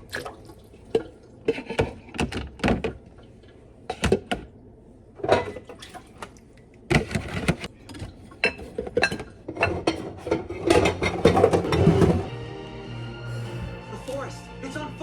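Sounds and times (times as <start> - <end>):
dishes and utensils clinking: 5.2 - 5.7, 7.1 - 12.3.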